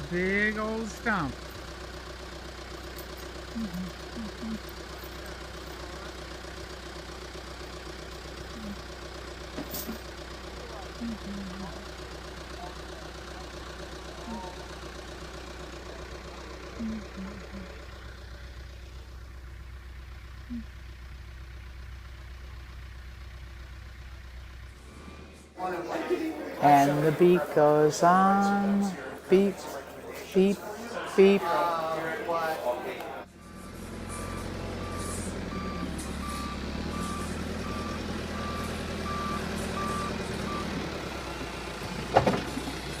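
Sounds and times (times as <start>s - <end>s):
backhoe engine idling: 0.0s - 43.0s
reversing alarm beeping: 33.3s - 41.7s.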